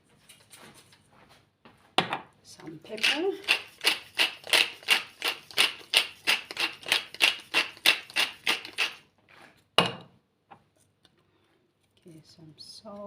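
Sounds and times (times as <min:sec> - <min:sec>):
pepper grinder crunching: 0:02.9 - 0:09.0.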